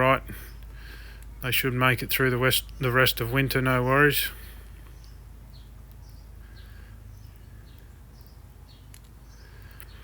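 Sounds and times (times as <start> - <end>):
small bird chirping: 4.8 - 10.0.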